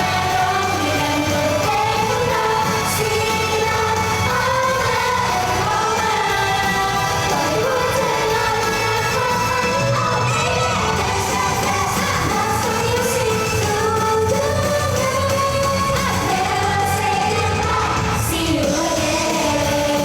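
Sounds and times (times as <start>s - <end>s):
amplified pop backing music: 0.0s - 20.0s
woman singing: 0.0s - 20.0s.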